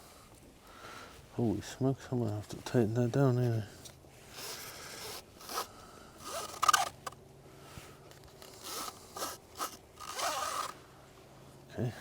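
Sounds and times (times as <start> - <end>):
nylon strap rasping through buckle: 3.8 - 7.2, 8.1 - 10.8.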